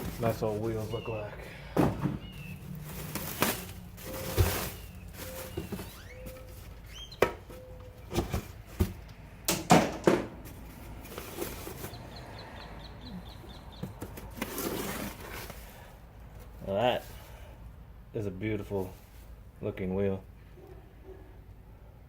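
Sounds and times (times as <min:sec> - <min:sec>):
cardboard box handled: 0:00.0 - 0:01.1, 0:01.8 - 0:09.0, 0:10.4 - 0:12.1, 0:13.8 - 0:17.2
short squeaks: 0:04.1 - 0:07.8.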